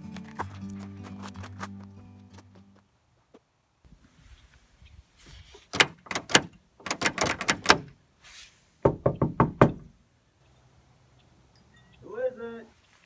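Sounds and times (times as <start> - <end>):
knocking on a door: 8.8 - 9.9.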